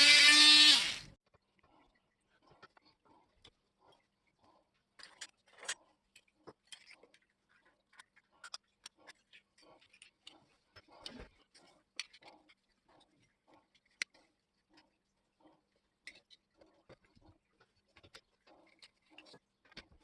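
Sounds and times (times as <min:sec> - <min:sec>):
small parts clicking and tapping: 0:04.8 - 0:20.0.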